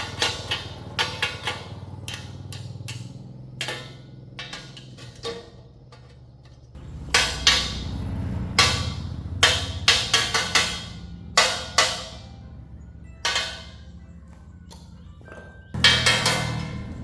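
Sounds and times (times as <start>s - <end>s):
low steady rumble: 0.0s - 17.0s
hammer striking metal: 6.8s - 17.0s.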